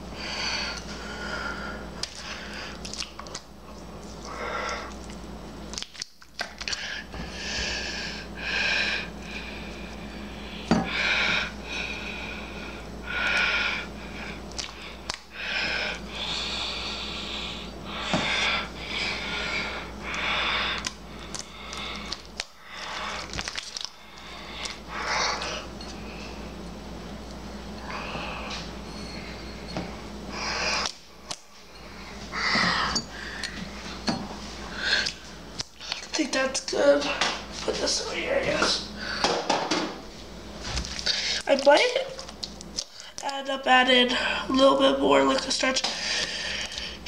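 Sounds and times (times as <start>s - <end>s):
slime squelching and popping: 2.0s - 4.2s, 4.9s - 6.8s, 23.2s - 24.0s.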